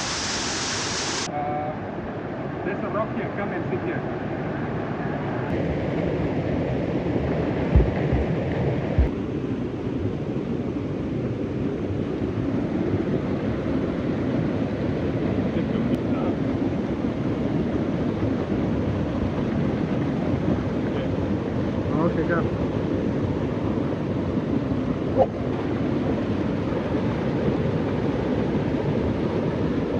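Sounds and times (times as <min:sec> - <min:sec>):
waterfall rushing: 0:00.0 - 0:01.3
dull low thumps: 0:07.5 - 0:09.2.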